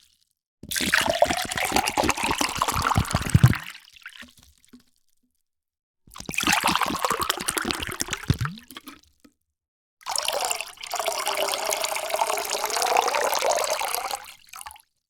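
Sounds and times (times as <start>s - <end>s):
water pouring into vessel: 0.7s - 3.7s, 6.2s - 9.0s, 10.1s - 14.7s.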